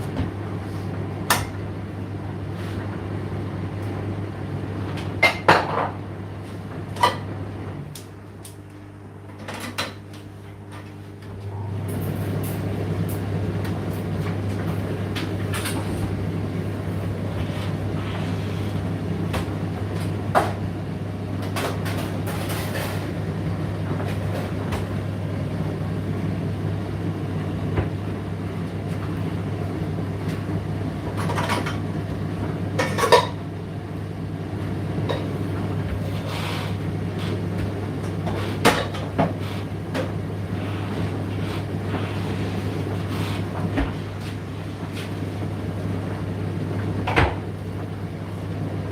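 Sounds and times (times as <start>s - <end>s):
tumble dryer humming: 6.1s - 32.8s.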